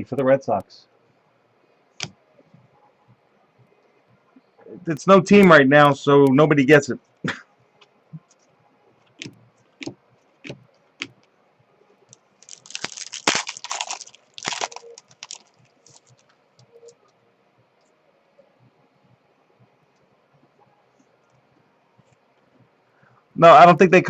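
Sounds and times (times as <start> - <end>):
wrappers crinkling: 12.4 - 16.3.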